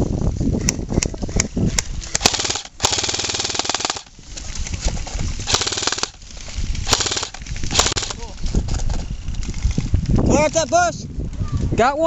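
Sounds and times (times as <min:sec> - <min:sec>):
airsoft rifles firing full-auto: 0:02.2 - 0:04.1, 0:05.5 - 0:06.2, 0:06.9 - 0:08.2.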